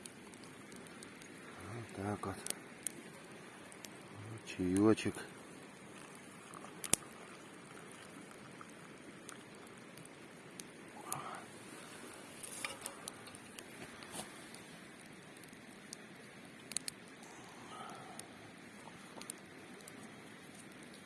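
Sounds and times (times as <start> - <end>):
campfire crackling: 0.0 - 21.0
faint steady hiss: 0.0 - 21.0.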